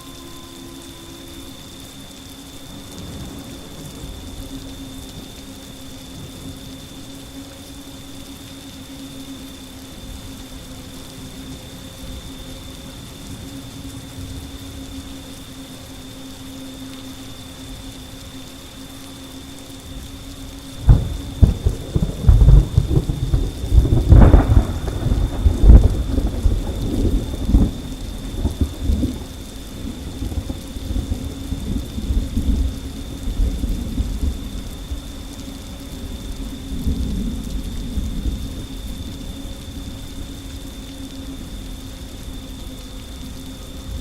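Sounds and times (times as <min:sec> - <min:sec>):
steady rain: 0:00.0 - 0:44.0
thunder cracking and rumbling: 0:02.6 - 0:06.9, 0:20.7 - 0:40.4.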